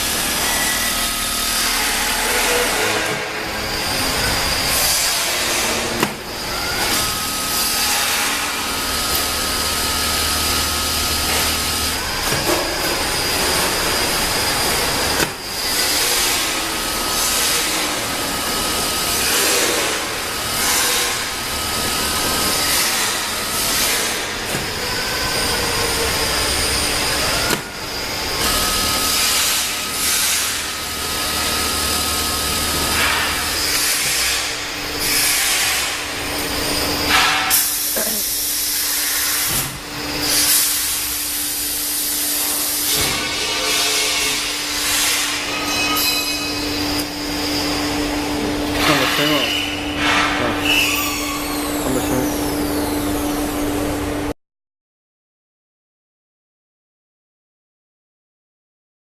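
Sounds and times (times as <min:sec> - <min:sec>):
sewing machine motor whine: 0:36.5 - 0:54.2.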